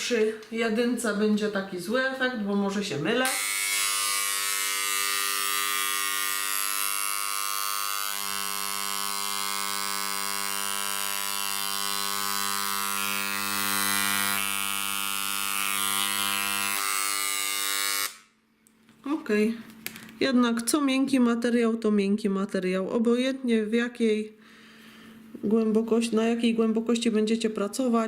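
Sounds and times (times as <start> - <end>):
electric engraver buzzing: 3.2 - 18.3.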